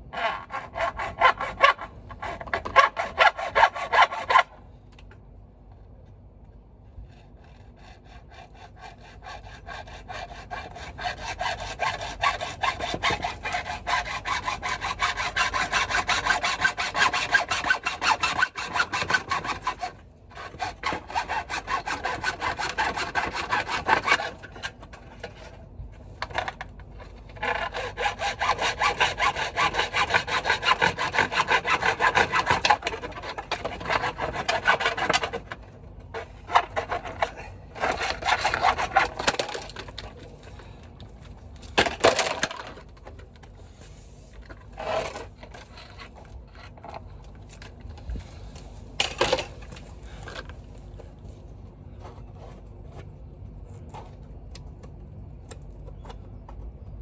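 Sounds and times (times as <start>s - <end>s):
hand saw cutting gutter: 0.1s - 4.5s, 7.2s - 25.5s, 27.3s - 40.0s.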